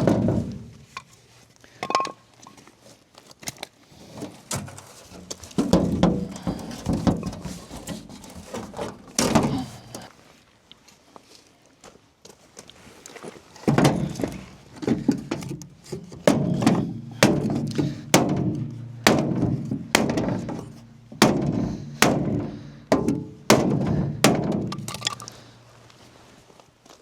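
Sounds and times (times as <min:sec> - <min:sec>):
hammer striking metal frame: 0:16.2 - 0:25.2.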